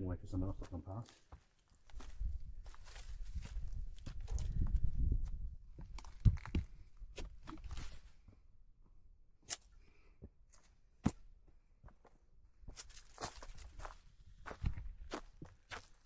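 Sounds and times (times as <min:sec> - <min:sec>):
footsteps on gravel: 0:12.7 - 0:16.0.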